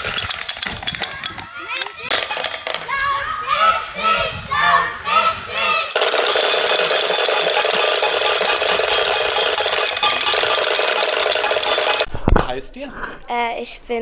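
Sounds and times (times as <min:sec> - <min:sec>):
wooden rattles clattering: 0:00.0 - 0:03.1, 0:06.0 - 0:12.1.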